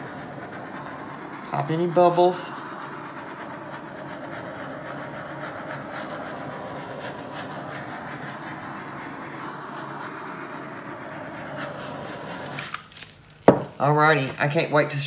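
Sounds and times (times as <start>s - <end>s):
torch flame hissing: 0.0s - 15.0s.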